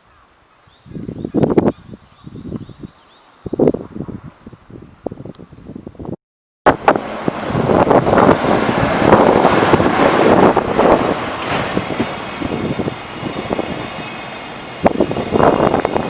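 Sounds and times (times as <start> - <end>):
train wheels on rails: 6.7 - 16.0
wheels clattering over rail joints: 6.7 - 16.0.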